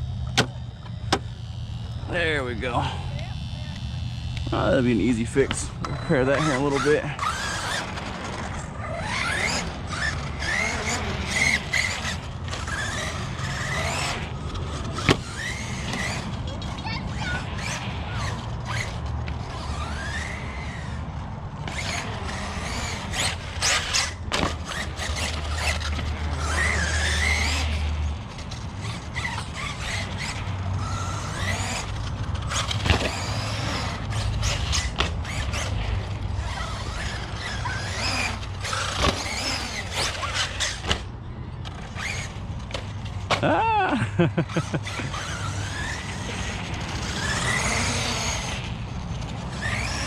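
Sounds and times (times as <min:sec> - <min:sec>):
electric motor whining: 0:00.0 - 0:50.0
sharp knocks from landings: 0:00.1 - 0:02.0, 0:07.2 - 0:17.5, 0:22.7 - 0:41.1.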